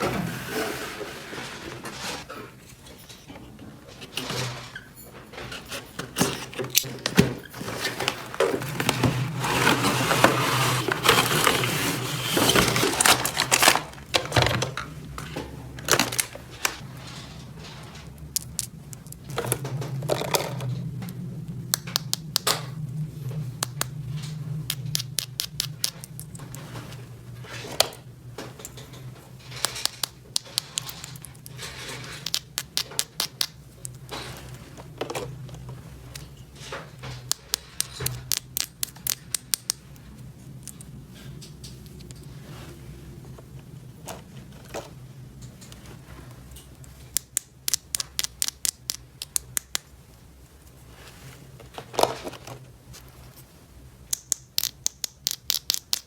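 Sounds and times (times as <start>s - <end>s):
packaging crinkling: 6.7s - 14.8s
plastic toy pieces clicking: 29.6s - 31.6s, 32.2s - 34.0s, 37.3s - 39.8s, 47.1s - 49.8s, 54.1s - 56.0s.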